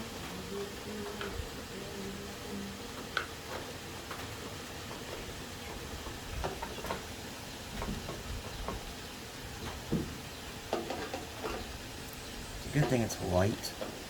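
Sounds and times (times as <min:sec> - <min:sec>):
steady low background noise: 0:00.0 - 0:14.0.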